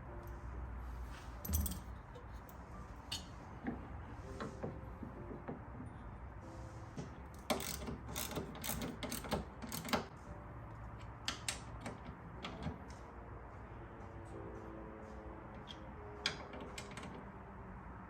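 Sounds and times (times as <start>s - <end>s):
ratchet wrench clicking: 7.4s - 10.1s.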